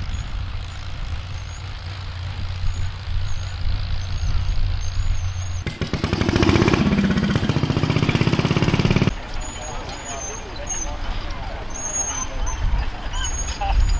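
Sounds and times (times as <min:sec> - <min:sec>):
engine with fast firing beat: 0:00.0 - 0:09.2
low steady engine hum: 0:00.0 - 0:13.9.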